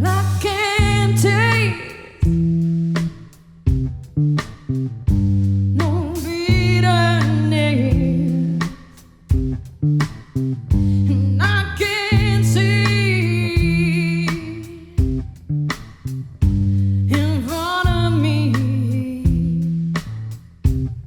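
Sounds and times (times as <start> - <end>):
person singing with vibrato: 0.0 - 2.3
low bass notes: 0.0 - 21.0.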